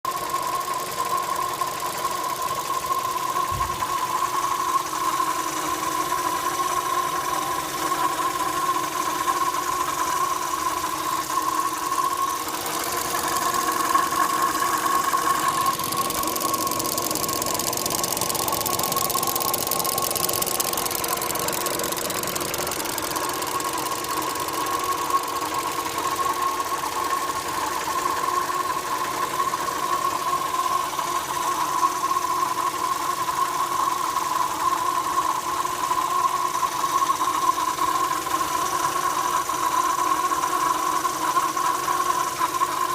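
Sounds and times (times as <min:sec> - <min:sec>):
car engine running: 0:00.1 - 0:31.6.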